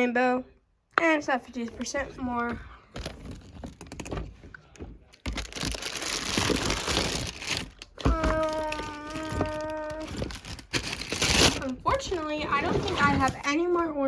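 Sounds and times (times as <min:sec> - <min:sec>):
plastic crinkling and rustling: 0:01.7 - 0:13.8
plastic toys clicking and knocking: 0:02.9 - 0:12.2.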